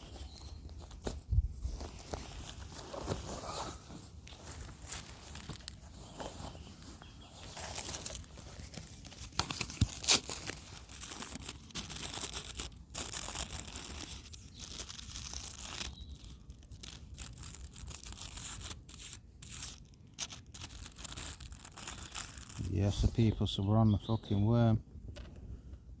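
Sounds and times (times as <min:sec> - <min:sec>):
paper rustling and tearing: 0:00.0 - 0:23.3.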